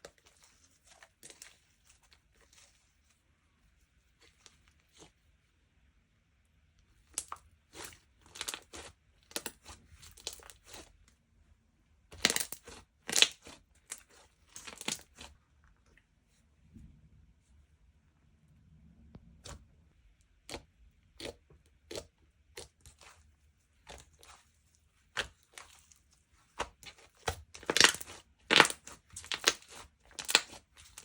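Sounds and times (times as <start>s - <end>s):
slime squishing and crackling: 0.0s - 2.9s, 7.0s - 11.0s, 12.1s - 15.4s, 20.3s - 31.0s.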